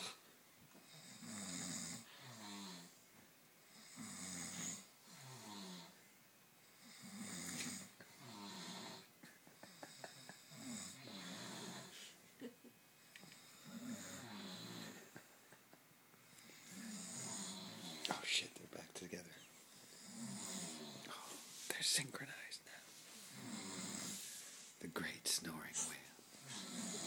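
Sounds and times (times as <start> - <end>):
men snoring: 0.9 - 3.0, 3.7 - 6.0, 6.8 - 12.2, 13.2 - 15.2, 16.3 - 18.4, 19.8 - 21.3, 23.2 - 24.3, 25.8 - 27.0.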